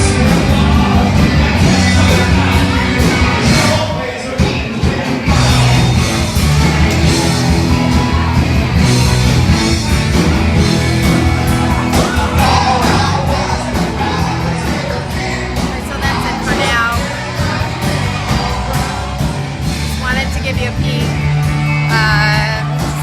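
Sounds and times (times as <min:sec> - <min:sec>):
bass guitar: 0:00.0 - 0:23.0
drums: 0:00.0 - 0:23.0
electric guitars: 0:00.0 - 0:23.0
person singing: 0:11.0 - 0:21.2.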